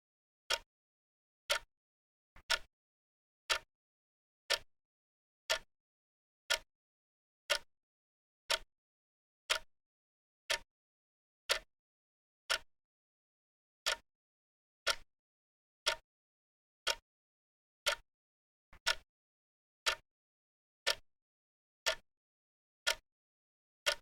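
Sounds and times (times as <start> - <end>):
timer ticking: 2.4 - 2.7, 3.5 - 3.7, 5.5 - 5.7, 9.5 - 9.7, 18.8 - 19.0, 21.8 - 22.0.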